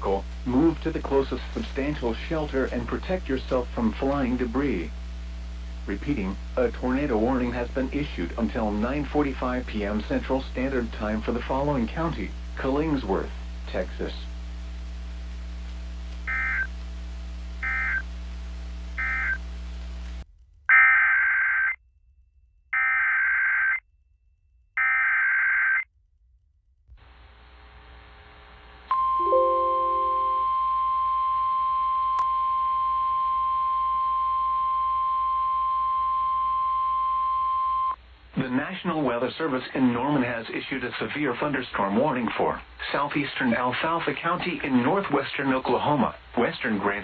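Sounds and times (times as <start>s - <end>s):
data bursts: 16.3s - 16.7s, 17.6s - 18.1s, 19.0s - 19.4s
steady warning alarm tone: 16.3s - 16.7s, 17.6s - 18.0s, 19.0s - 19.4s, 22.8s - 23.8s, 24.8s - 25.8s
warbling data bursts: 16.3s - 16.7s, 17.6s - 18.1s, 19.0s - 19.4s.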